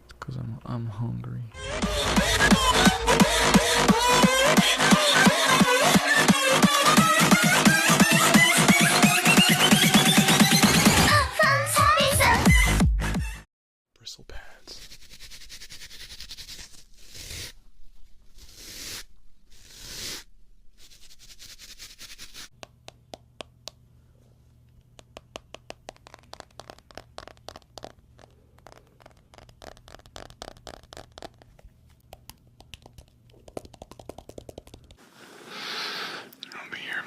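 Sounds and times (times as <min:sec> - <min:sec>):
bristle pad swishing strokes: 0:14.8 - 0:22.5, 0:25.8 - 0:32.0
fast scratchy clicks: 0:25.0 - 0:35.0.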